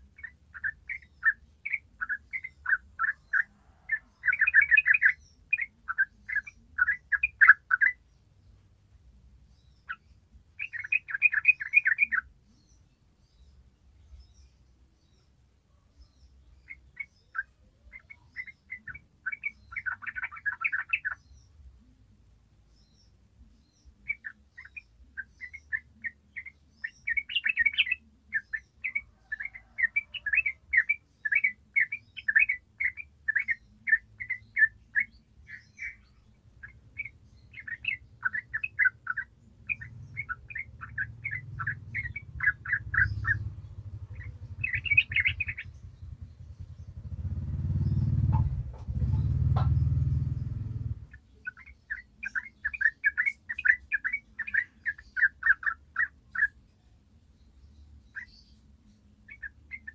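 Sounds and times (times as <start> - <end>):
bird singing chattering notes: 0.0 - 8.2, 9.5 - 15.3, 16.0 - 21.6, 22.8 - 56.6, 57.4 - 59.9.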